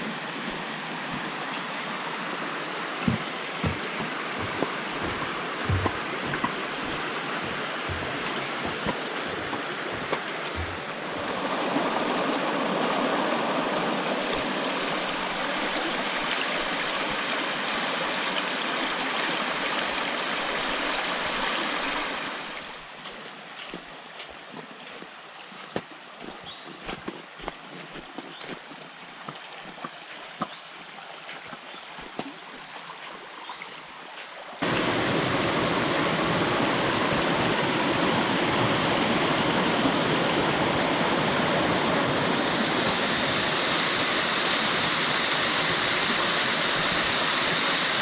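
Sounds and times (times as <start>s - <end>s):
mountain stream rushing: 0.0s - 48.0s
low thuds from water: 3.0s - 12.2s.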